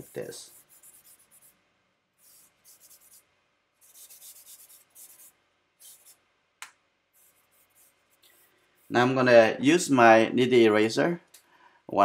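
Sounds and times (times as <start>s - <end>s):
charcoal scratching on paper: 0.0s - 1.6s, 2.2s - 6.2s, 7.2s - 9.0s.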